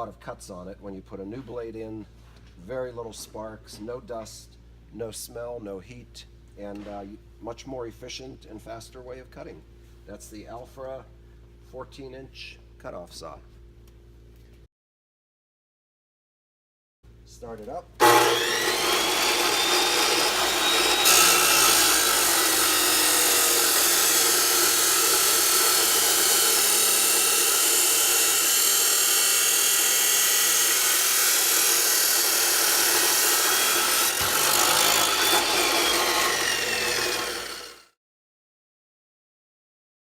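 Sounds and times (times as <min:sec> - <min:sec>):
metal cutting saw grinding: 0:18.0 - 0:37.9.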